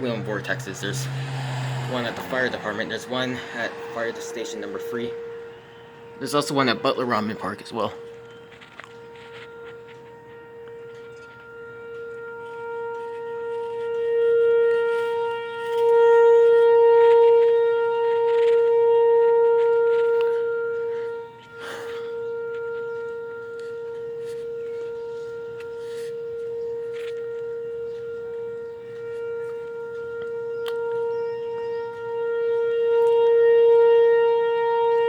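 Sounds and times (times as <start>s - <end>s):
warning siren steady tone: 0.0s - 35.0s.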